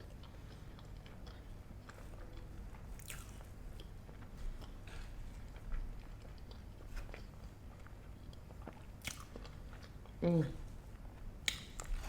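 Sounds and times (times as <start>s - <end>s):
wet chewing mouth clicks: 8.3s - 10.0s, 11.4s - 12.0s.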